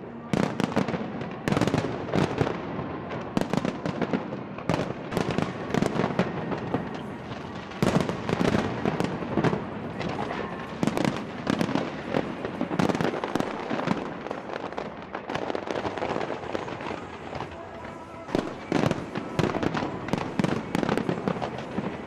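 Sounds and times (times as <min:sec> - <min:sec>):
fireworks bangs and crackles: 0:00.0 - 0:22.0.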